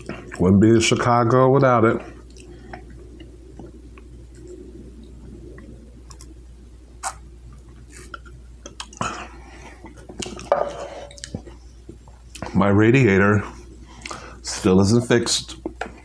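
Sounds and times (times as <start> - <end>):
steady low hum: 0.0 - 16.0
person chewing food: 2.2 - 12.5.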